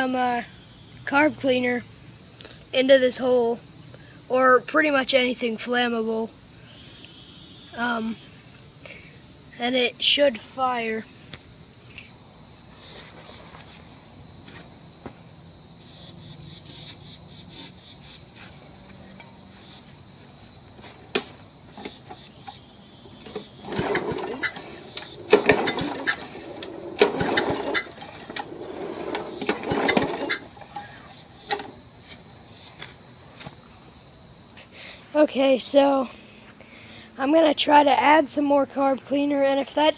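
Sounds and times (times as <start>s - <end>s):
crickets chirring: 0.0s - 39.9s
lawn mower engine cranking: 20.9s - 32.2s
starter cord yanked: 23.2s - 31.8s.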